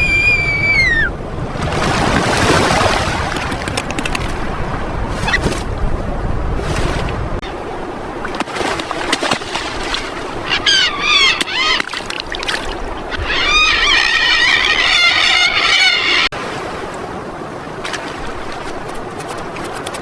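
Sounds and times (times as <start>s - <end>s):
birds honking: 10.3s - 11.9s, 12.8s - 16.3s
dense chorus of bird calls: 12.9s - 16.3s.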